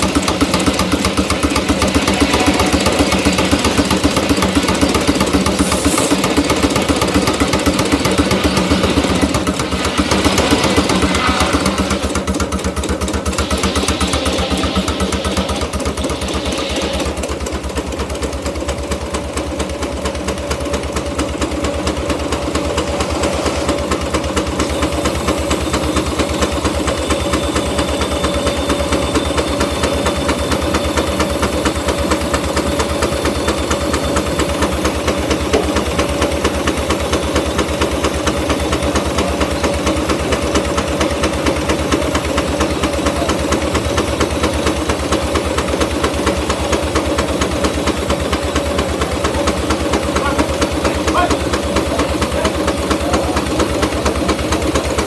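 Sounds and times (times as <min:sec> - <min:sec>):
steam engine exhaust beating: 0:00.0 - 0:55.0
steady held tone: 0:01.0 - 0:06.7.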